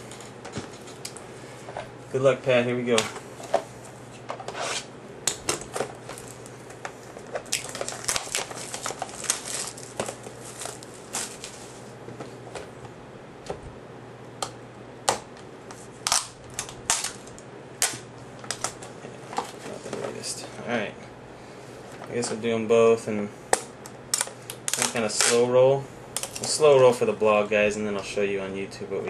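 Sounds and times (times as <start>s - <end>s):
plastic wrapping crinkling and tearing: 5.6s - 11.9s, 16.0s - 18.8s, 24.1s - 25.4s.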